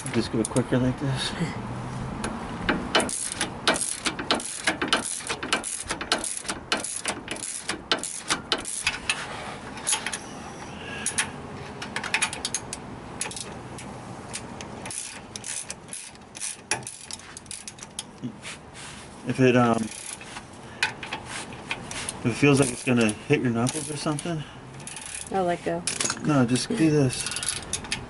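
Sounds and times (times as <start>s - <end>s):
hand ratchet clicking: 2.7s - 9.1s, 14.3s - 18.1s, 19.8s - 26.1s, 27.2s - 28.0s.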